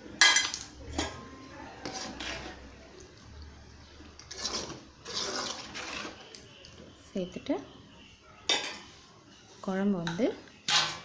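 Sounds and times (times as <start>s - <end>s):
spoon scraping a cooking pan: 1.8s - 2.7s, 4.0s - 6.9s, 8.5s - 11.0s.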